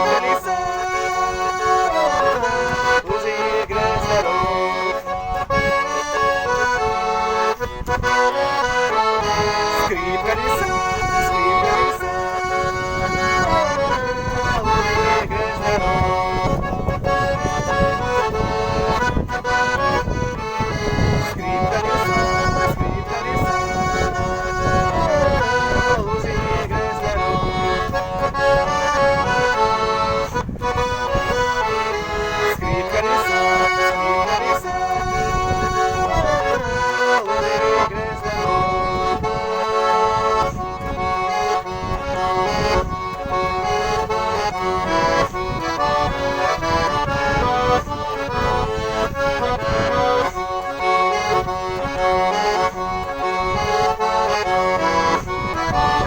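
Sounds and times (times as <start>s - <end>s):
button accordion playing: 0.0s - 56.0s.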